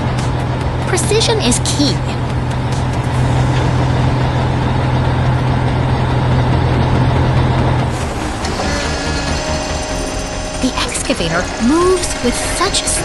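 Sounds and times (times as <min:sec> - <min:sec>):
heavy machine engine rumbling: 0:00.0 - 0:13.0.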